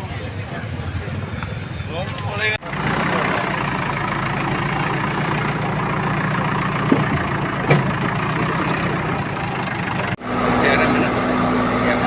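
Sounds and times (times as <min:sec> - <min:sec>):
street noise: 0:00.0 - 0:12.0
vehicle engine idling: 0:00.1 - 0:12.0.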